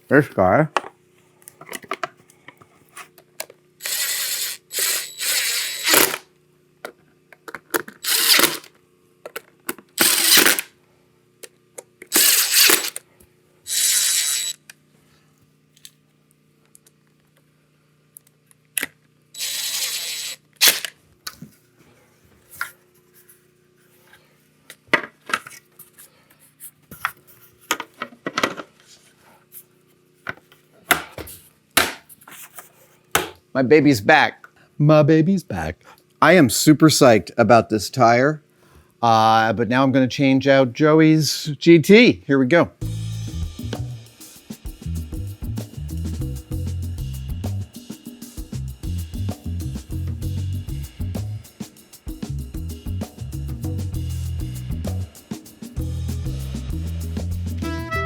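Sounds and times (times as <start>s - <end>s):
cordless power driver whirring: 3.8s - 6.2s, 8.0s - 8.7s, 10.0s - 10.7s, 12.1s - 13.0s, 13.7s - 14.6s, 19.4s - 20.9s.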